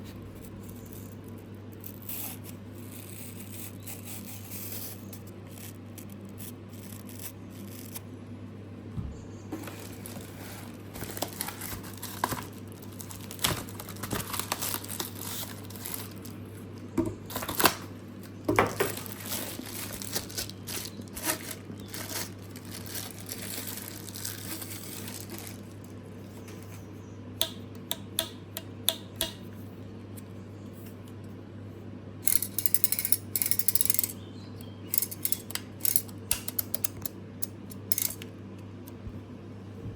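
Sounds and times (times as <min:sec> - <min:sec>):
steady low hum: 0:00.0 - 0:39.9
packaging crinkling and rustling: 0:09.6 - 0:26.7.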